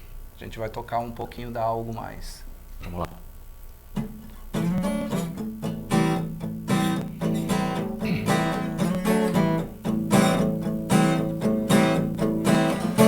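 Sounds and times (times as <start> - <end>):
acoustic guitar strumming: 3.9 - 13.0.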